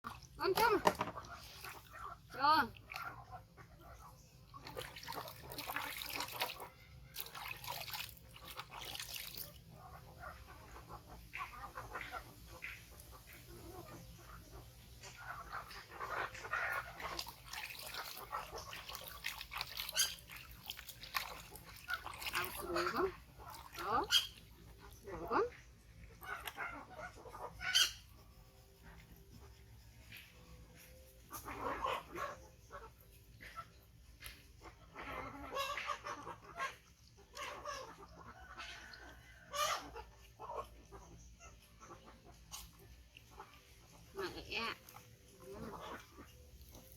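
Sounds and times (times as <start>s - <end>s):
baby monkey squeaking: 24.0s - 24.4s, 27.5s - 28.3s.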